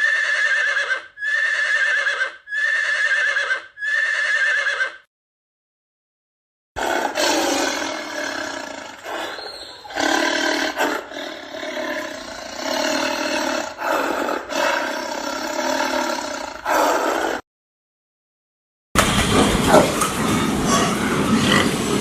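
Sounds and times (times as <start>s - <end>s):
big cat roaring: 6.8s - 17.4s, 19.2s - 22.0s.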